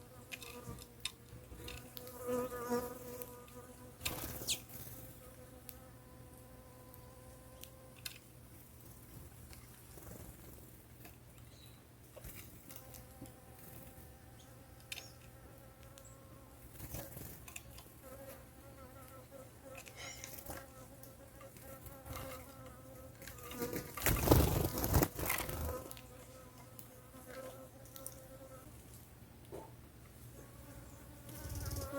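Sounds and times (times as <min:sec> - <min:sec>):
bird chirps: 0:11.4 - 0:11.9.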